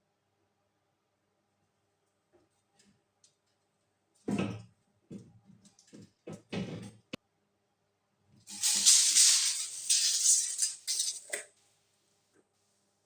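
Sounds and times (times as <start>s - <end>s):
welding arc crackling hiss: 8.5s - 11.3s
metal parts knocking and scraping: 8.5s - 11.4s.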